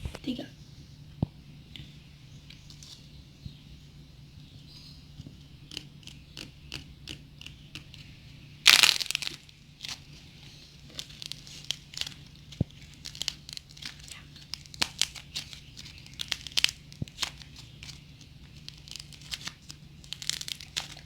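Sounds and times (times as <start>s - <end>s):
dried clay crackling and crunching: 4.6s - 21.0s.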